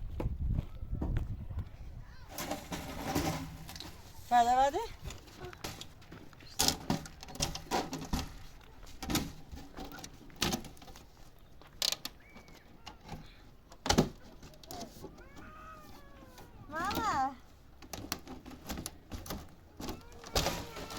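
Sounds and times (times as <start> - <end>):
sharp knocks and clatters: 2.3 - 4.0.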